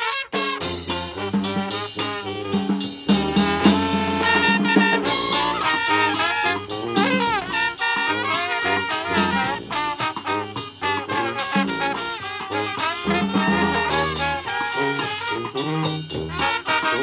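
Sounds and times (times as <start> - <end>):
brass band playing: 0.0 - 17.0.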